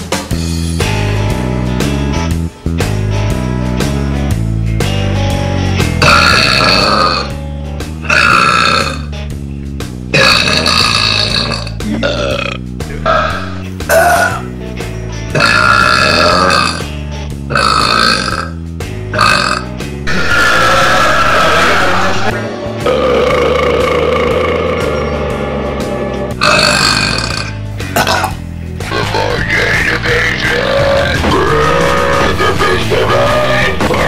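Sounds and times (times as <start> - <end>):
background music: 0.0 - 34.0
person burping: 6.0 - 7.3, 8.0 - 9.1, 10.1 - 14.5, 15.3 - 16.9, 17.5 - 25.4, 26.4 - 28.5.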